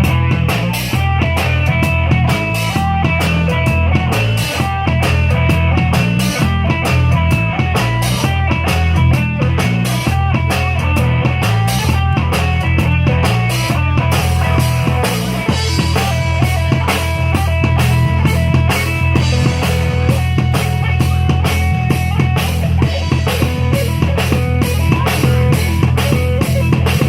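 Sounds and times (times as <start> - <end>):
drum kit beat: 0.0 - 27.0
rock band playing: 0.0 - 27.0.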